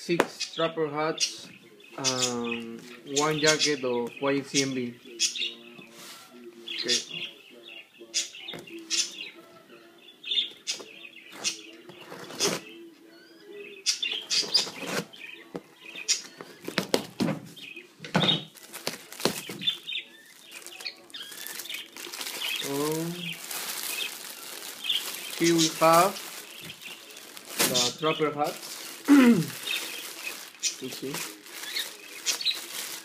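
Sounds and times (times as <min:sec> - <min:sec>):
packaging crinkling and rustling: 0:18.5 - 0:33.0.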